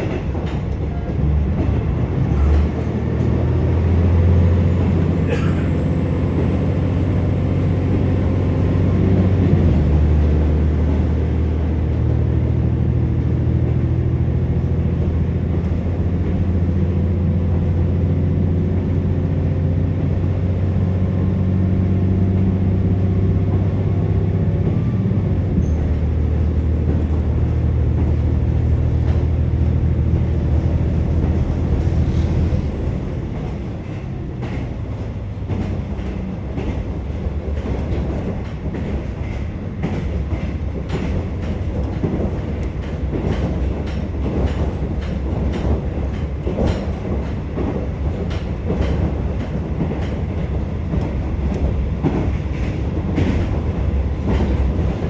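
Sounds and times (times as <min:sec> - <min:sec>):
wheels clicking over rail joints: 0:00.0 - 0:03.4, 0:25.6 - 0:55.0
train wheel rumble: 0:00.0 - 0:55.0.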